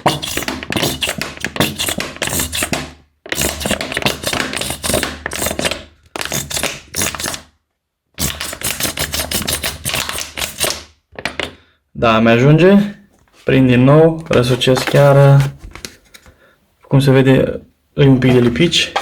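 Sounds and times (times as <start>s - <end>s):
plastic bottle crackling: 0.0s - 7.4s, 14.2s - 16.4s.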